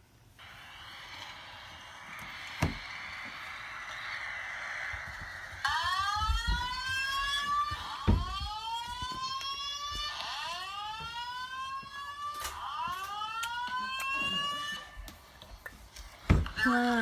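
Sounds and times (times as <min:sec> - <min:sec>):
fire alarm whoop tone: 0:01.9 - 0:15.1.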